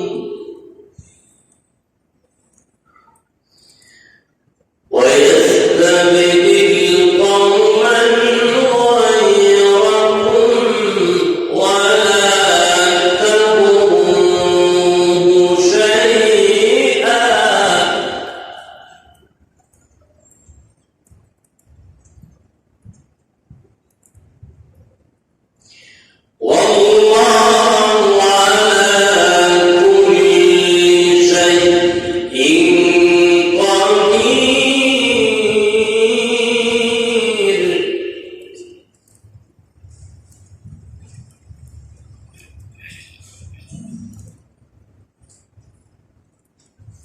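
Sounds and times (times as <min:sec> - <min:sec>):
man reciting melodically: 0:00.0 - 0:01.3, 0:04.9 - 0:19.9, 0:25.7 - 0:45.6.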